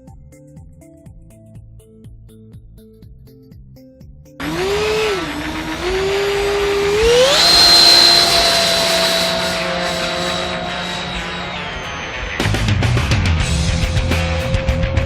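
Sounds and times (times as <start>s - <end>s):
electric ducted fans whining: 4.4s - 13.0s.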